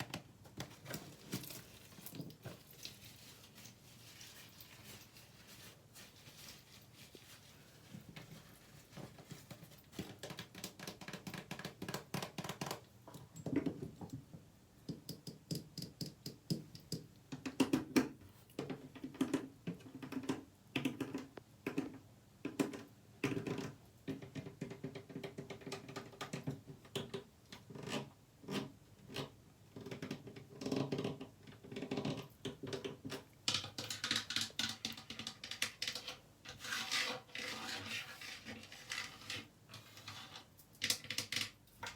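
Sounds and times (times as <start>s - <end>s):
fingers tapping objects: 10.0s - 13.9s, 14.8s - 36.2s
scratchy rubbing: 36.0s - 40.5s.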